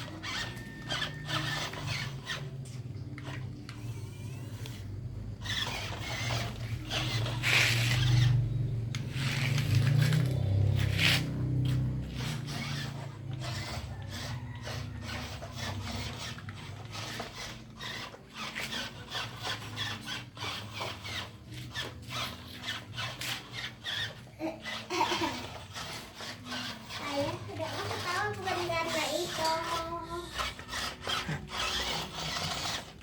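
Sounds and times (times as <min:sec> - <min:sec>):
excavator bucket scraping sand: 0:05.4 - 0:24.1.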